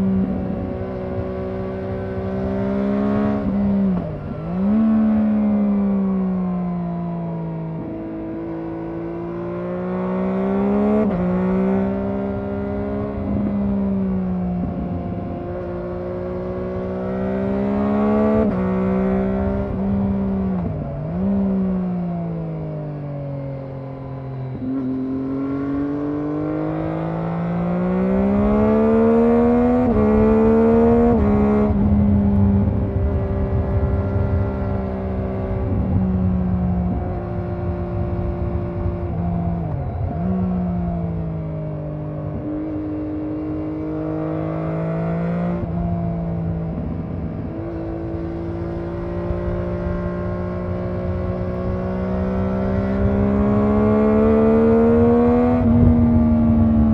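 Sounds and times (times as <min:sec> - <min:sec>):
motorcycle engine revving: 0:00.0 - 0:56.9
wind rush: 0:28.2 - 0:41.3, 0:52.9 - 0:56.9.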